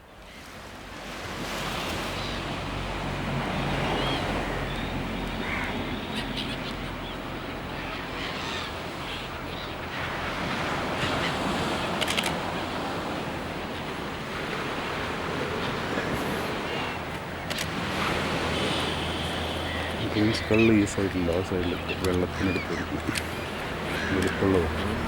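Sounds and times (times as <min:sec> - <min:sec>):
sea waves washing: 0:00.0 - 0:25.0
wind buffeting microphone: 0:10.1 - 0:25.0
sharp clicks: 0:22.0 - 0:22.3.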